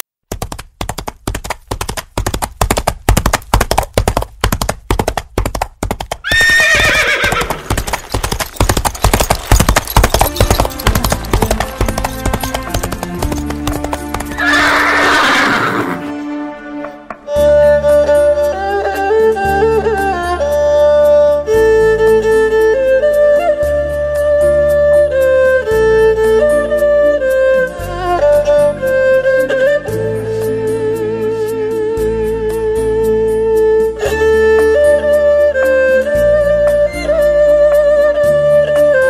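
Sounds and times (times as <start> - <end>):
horse hooves clip-clopping: 0.3 - 16.0, 16.8 - 17.4
horse neighing: 6.3 - 7.8, 14.3 - 16.1
music with long held notes: 9.2 - 39.0.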